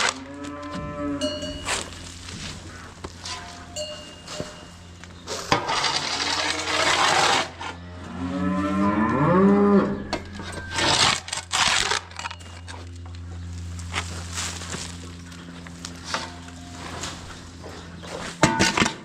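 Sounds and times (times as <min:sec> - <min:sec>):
cow mooing: 0:00.0 - 0:02.1, 0:05.8 - 0:11.0
steady low hum: 0:00.0 - 0:19.0
rustling or scraping noise: 0:01.4 - 0:07.8.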